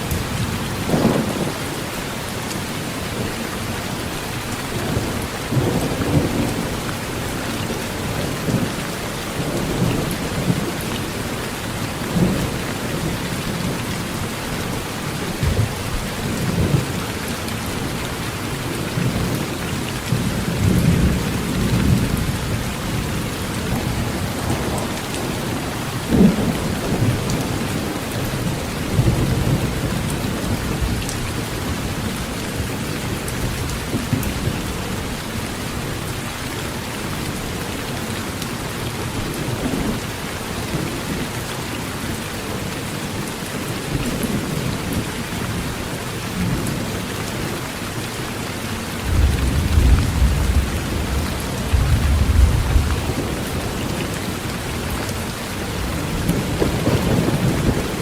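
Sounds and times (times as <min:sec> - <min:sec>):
heavy rain on tin roof: 0:00.0 - 0:58.0
thunder rumbling: 0:49.0 - 0:58.0.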